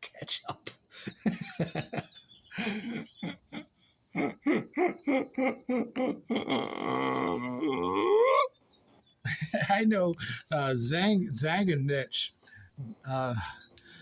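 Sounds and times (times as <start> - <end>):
person making wordless vocal sounds: 4.2 - 8.6, 12.7 - 13.6.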